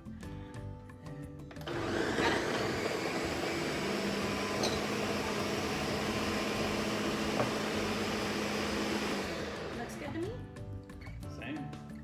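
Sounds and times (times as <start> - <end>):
blender motor running: 1.6 - 10.5.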